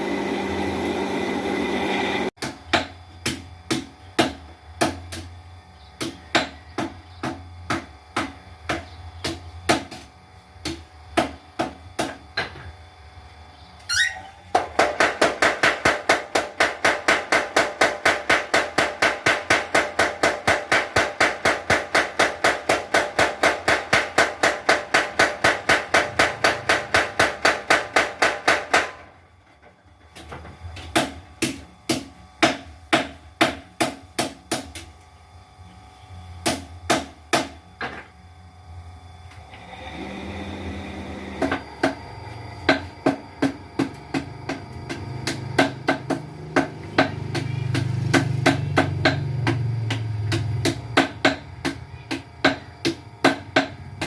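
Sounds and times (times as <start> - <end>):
low motor hum: 0.0 - 2.4, 38.0 - 54.0
power hammer striking: 14.5 - 29.1, 41.2 - 54.0.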